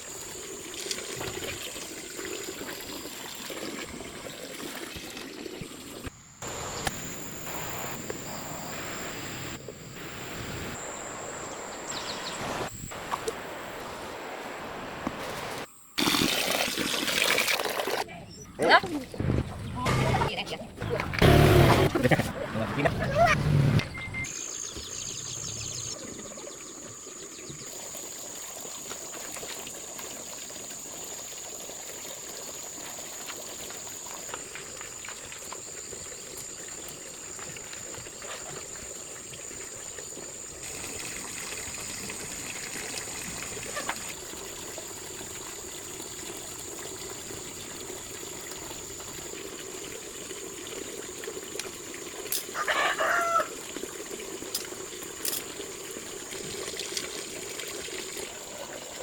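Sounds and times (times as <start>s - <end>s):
running water trickling: 0.0s - 7.6s, 24.2s - 59.0s
chicken call: 52.5s - 53.6s.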